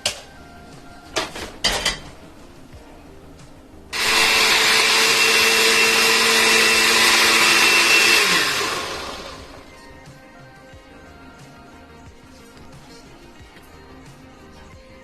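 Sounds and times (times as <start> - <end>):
blender running: 4.0 - 9.7.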